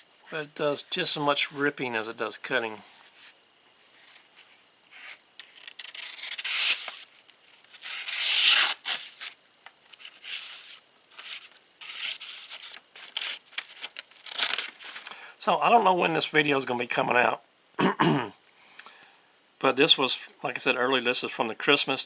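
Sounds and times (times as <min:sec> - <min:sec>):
paper rustling: 0:03.0 - 0:15.1
knife slicing paper: 0:04.9 - 0:09.4, 0:10.0 - 0:15.1.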